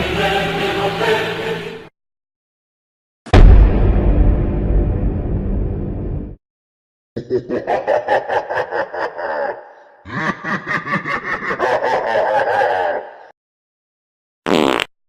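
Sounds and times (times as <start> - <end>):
person laughing: 7.2 - 13.3.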